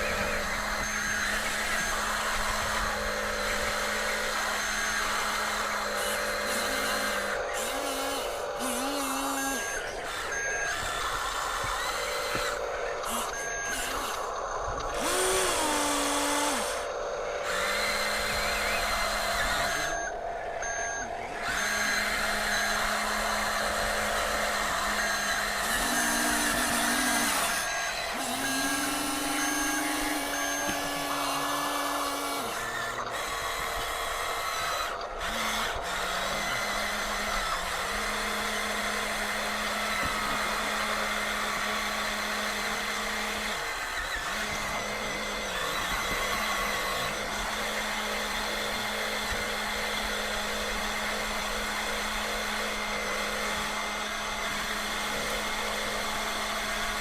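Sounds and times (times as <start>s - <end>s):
toy electric motors whining: 0.0s - 57.0s
short beeping: 8.6s - 10.9s, 13.2s - 16.6s, 19.5s - 22.9s.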